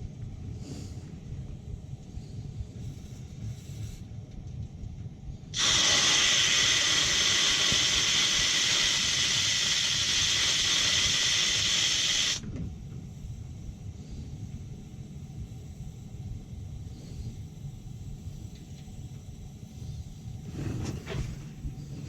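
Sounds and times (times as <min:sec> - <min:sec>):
water and air hissing from hose: 0:02.2 - 0:04.1, 0:05.6 - 0:12.4.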